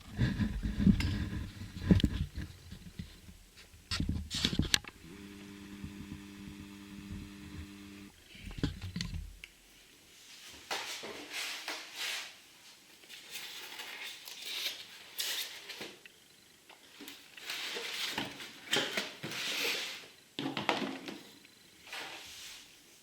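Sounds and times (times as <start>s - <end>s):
packaging rustling and scraping: 13.0s - 16.0s, 17.0s - 20.2s.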